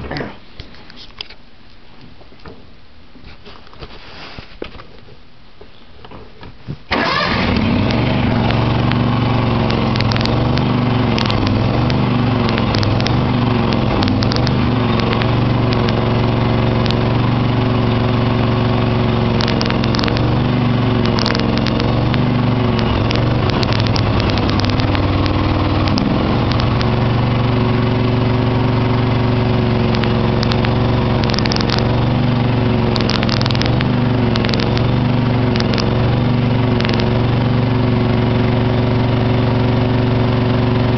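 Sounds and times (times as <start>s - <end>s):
small engine running: 6.9s - 40.9s
sharp ticks: 9.6s - 17.1s, 19.3s - 27.0s, 29.8s - 32.0s, 32.8s - 36.0s, 36.8s - 37.2s.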